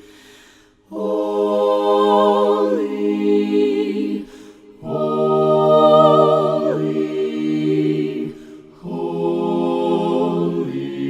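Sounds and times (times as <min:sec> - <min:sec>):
singer's breath: 0:00.0 - 0:00.9
voices singing a hymn a cappella: 0:00.8 - 0:11.0.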